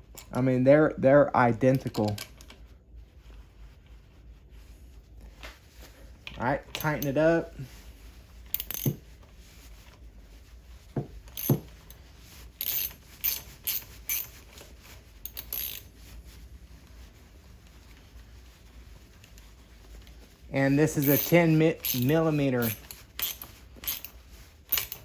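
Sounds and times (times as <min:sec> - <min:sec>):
hand tools clinking on metal: 0:20.9 - 0:24.1.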